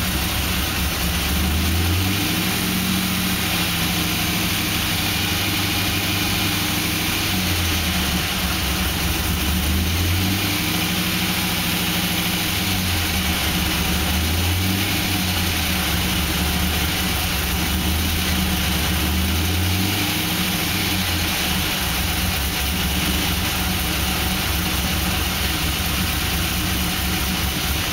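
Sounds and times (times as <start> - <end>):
car engine idling: 0.0 - 27.9.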